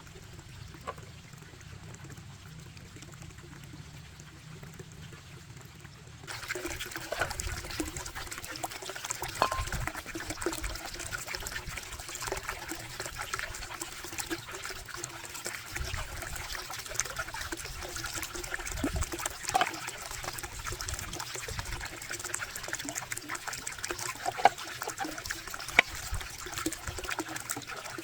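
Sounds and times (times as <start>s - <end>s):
small clicks and splashes: 0.0s - 28.0s
water trickling: 0.0s - 28.0s.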